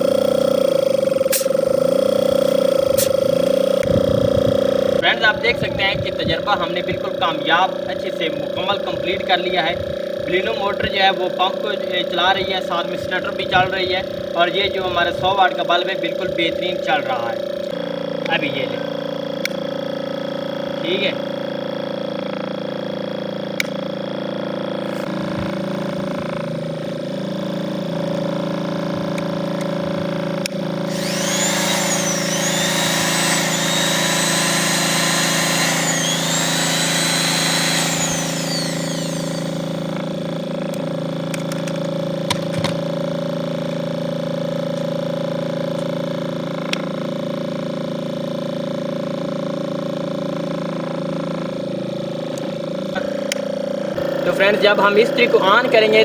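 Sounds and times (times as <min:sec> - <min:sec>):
motor and compressor humming: 0:00.0 - 0:56.0
whining sound: 0:30.9 - 0:40.4.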